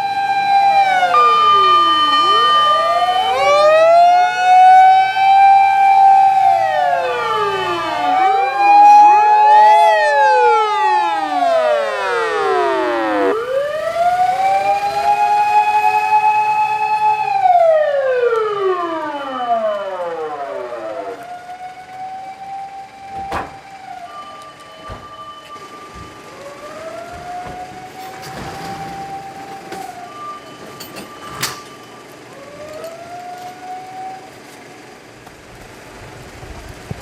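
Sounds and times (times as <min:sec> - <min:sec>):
faint siren winding up: 0:00.0 - 0:04.0
loud siren wail: 0:00.0 - 0:34.6.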